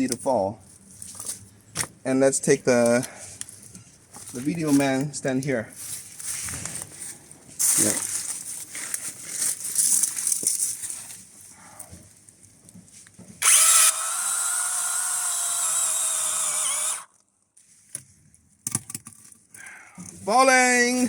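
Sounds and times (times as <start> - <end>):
battery chainsaw whining: 13.4 - 17.1.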